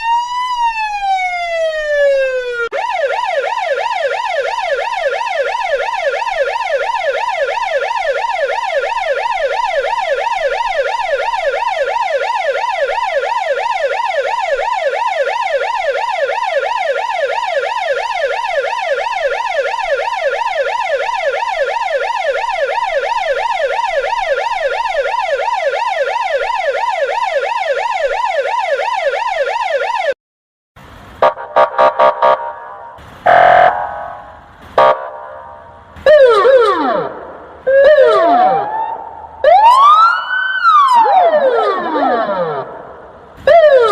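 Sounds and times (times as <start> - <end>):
police siren yelping: 0.0 - 30.2, 31.2 - 43.9
quacking horn blasts: 31.2 - 35.6.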